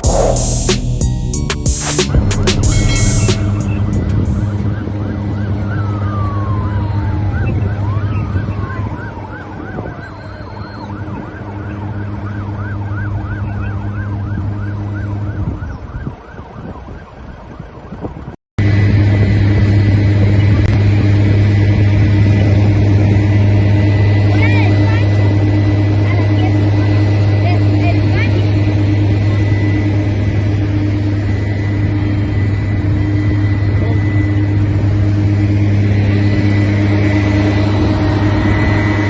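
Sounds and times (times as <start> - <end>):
low engine drone: 0.0 - 6.0
siren yelping: 0.0 - 17.0
siren wailing: 0.0 - 17.4, 28.4 - 39.0.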